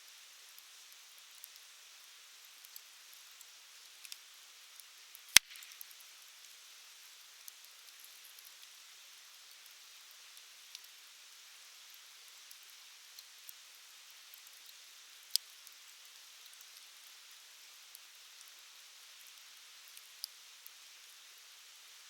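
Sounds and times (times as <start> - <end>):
campfire hissing and crackling: 0.0 - 22.0
loud sharp pop of fire: 5.4 - 5.9.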